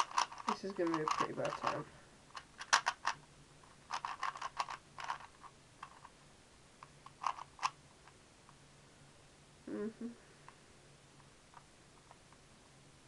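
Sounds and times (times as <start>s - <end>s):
puzzle cube plastic clicks: 0.0s - 6.1s, 6.8s - 8.2s.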